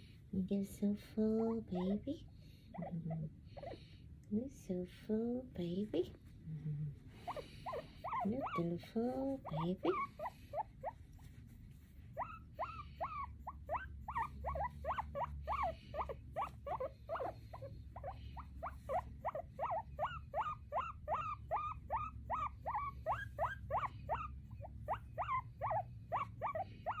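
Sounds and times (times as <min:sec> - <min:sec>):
small pet squeaking: 0:02.7 - 0:03.9, 0:07.2 - 0:11.3, 0:12.1 - 0:27.0.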